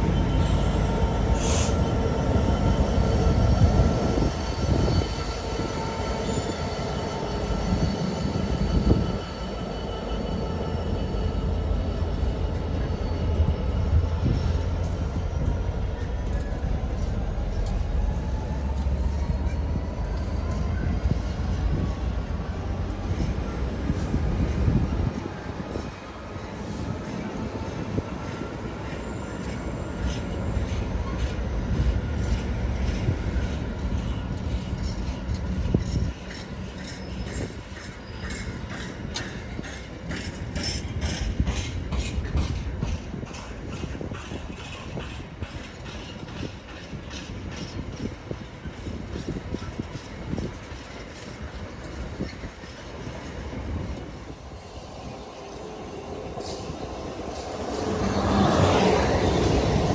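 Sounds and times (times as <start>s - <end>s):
train rumble: 0.0s - 59.9s
rhythmic wheel clicks on rail joints: 27.0s - 54.2s.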